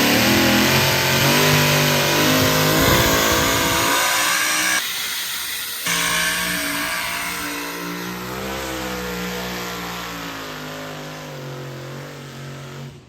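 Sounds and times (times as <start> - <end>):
diesel truck engine under load: 0.0 - 4.8.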